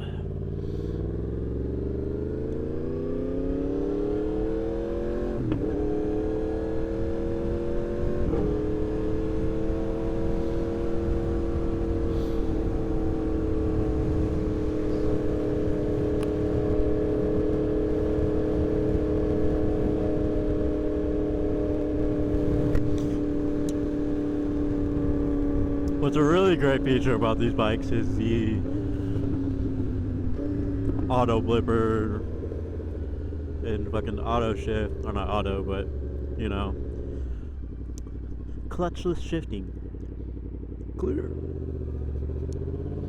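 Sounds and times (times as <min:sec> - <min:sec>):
motorcycle engine accelerating: 0:00.0 - 0:43.0
motorcycle gear upshifts: 0:05.3 - 0:26.2
wind noise on microphone: 0:12.4 - 0:20.8, 0:21.7 - 0:24.0.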